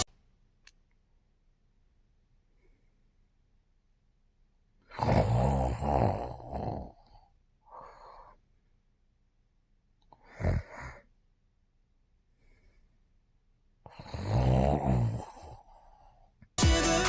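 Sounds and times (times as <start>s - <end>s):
man snoring: 4.9s - 8.4s, 10.1s - 11.1s, 13.9s - 16.2s.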